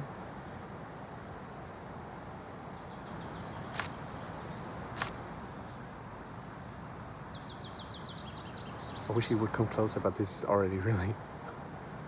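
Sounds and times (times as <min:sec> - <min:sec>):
river rushing: 0:03.6 - 0:05.4
camera shutter clicks: 0:03.8 - 0:04.0, 0:05.0 - 0:05.2.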